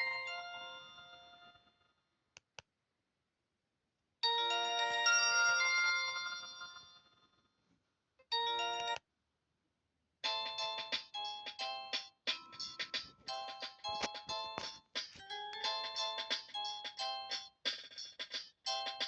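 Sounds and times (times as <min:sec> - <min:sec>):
polyphonic phone ringtone: 0:04.3 - 0:07.2, 0:08.4 - 0:09.0, 0:10.2 - 0:17.6, 0:18.7 - 0:19.0.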